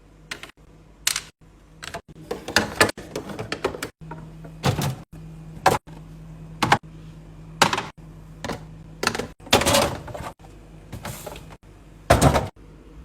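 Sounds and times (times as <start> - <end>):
groceries knocking in fridge: 12.1 - 12.6.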